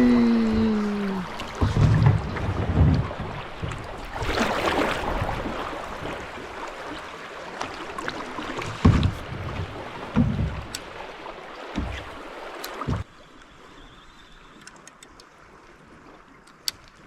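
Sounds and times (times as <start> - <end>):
river water rushing and splashing: 0.0 - 13.1
dull thump: 8.6 - 10.8, 11.7 - 12.2, 12.8 - 13.1.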